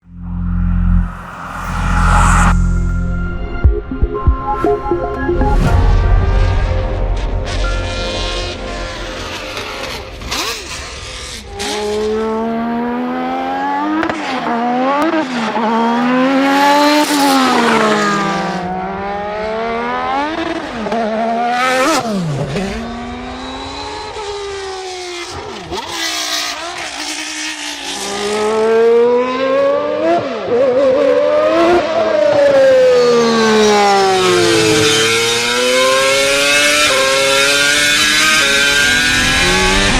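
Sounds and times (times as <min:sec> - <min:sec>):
racing car engine at high revs: 0:09.2 - 0:39.9.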